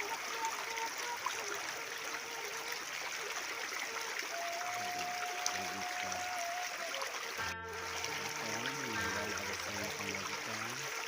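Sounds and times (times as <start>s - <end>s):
small river flowing: 0.0s - 11.0s
thin steady tone: 7.4s - 10.9s.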